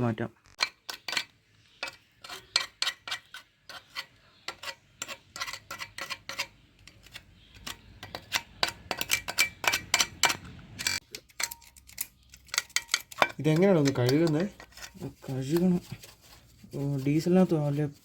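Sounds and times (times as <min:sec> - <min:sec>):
tools and metal parts clinking: 0:05.0 - 0:16.1.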